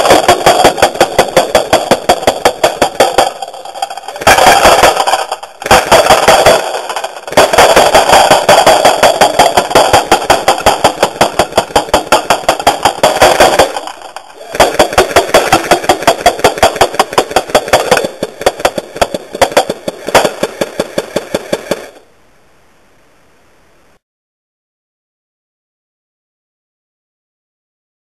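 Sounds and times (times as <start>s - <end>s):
airsoft gun firing full auto: 0.0s - 22.0s.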